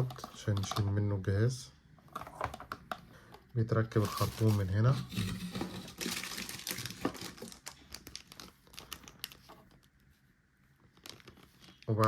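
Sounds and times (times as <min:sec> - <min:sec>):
plastic crinkling and clicking: 0:00.0 - 0:01.1, 0:02.1 - 0:10.1, 0:10.8 - 0:12.0.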